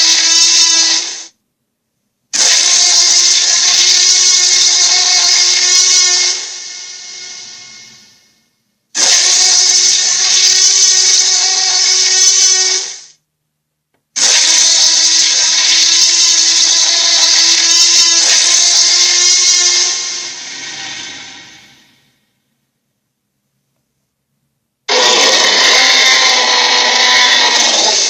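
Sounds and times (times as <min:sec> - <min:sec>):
electronic toy sound effect: 0:24.9 - 0:28.0.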